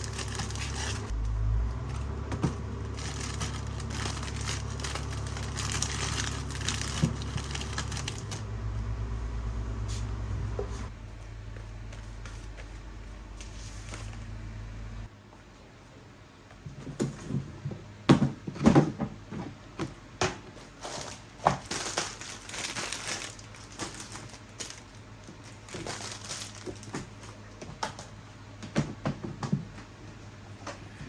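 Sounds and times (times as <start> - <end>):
crinkling rustle: 0.0 - 1.1, 2.8 - 8.4, 20.6 - 27.5.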